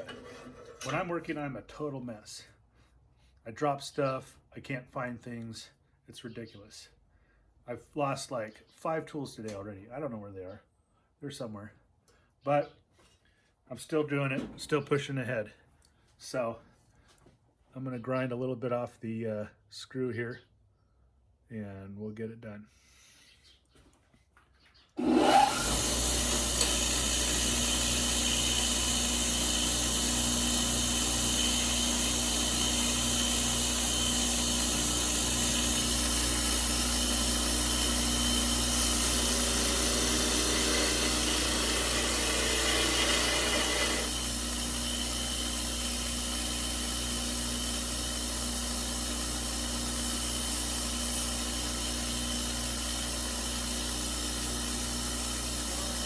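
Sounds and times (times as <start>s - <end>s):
power grinder grinding steel: 25.0s - 56.0s.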